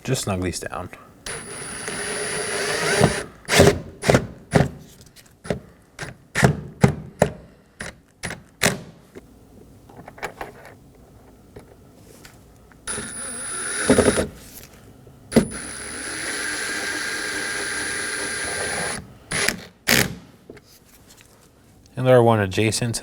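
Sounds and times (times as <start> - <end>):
power screwdriver whining: 1.3 - 4.2, 12.9 - 14.4, 15.3 - 20.0.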